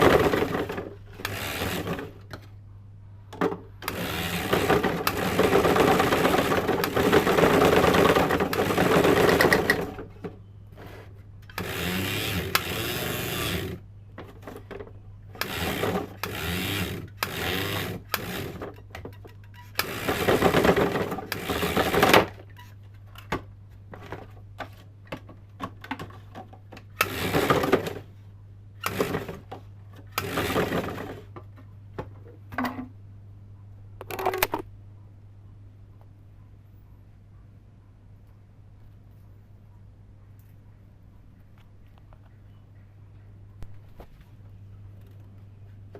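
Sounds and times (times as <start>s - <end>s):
steady low hum: 0.0s - 25.6s
sewing machine motor bursts: 1.2s - 2.1s, 3.8s - 9.8s, 11.5s - 13.8s, 15.4s - 18.6s, 19.8s - 22.3s, 27.0s - 28.0s, 28.8s - 29.4s, 30.1s - 31.2s.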